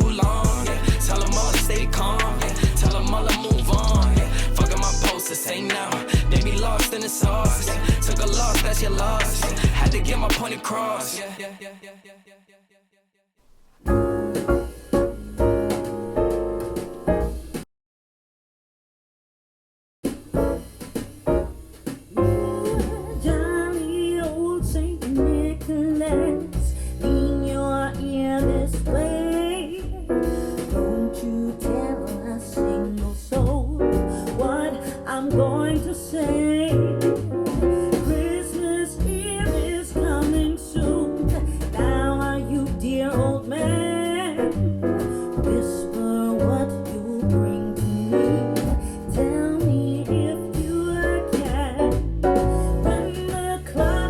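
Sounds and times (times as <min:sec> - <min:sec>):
bass: 0:00.0 - 0:05.2, 0:06.2 - 0:10.4, 0:13.9 - 0:17.6, 0:20.4 - 0:54.0
piano: 0:00.0 - 0:11.4, 0:13.8 - 0:17.6, 0:20.2 - 0:54.0
person singing: 0:00.0 - 0:12.6, 0:37.9 - 0:54.0.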